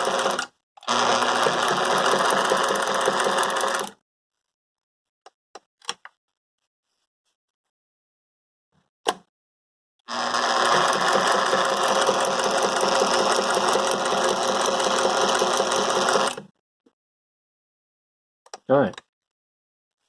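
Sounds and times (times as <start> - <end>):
sewing machine stitching: 0.0 - 4.0, 10.1 - 16.5.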